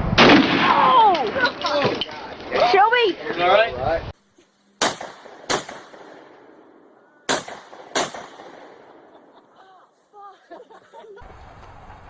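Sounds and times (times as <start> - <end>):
gunshots: 0.0 - 1.1, 4.8 - 9.2.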